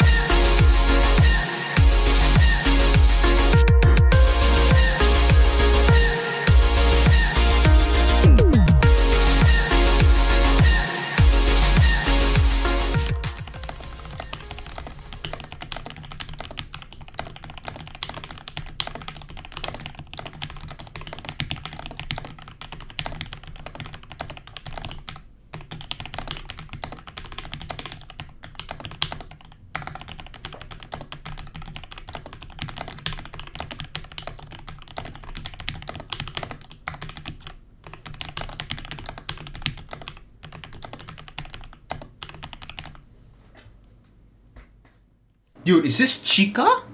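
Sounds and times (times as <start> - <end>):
mechanical keyboard typing: 13.2 - 43.0.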